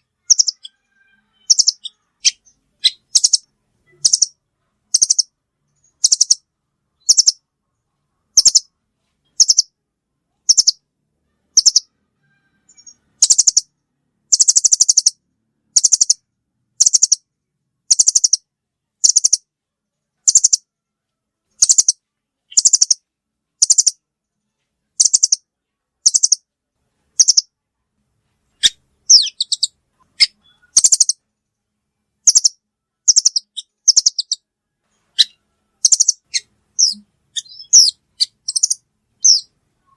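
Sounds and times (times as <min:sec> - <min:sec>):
bird trilling chatters: 0:00.3 - 0:00.7, 0:01.4 - 0:03.4, 0:28.6 - 0:31.2, 0:32.3 - 0:34.4, 0:35.2 - 0:39.5.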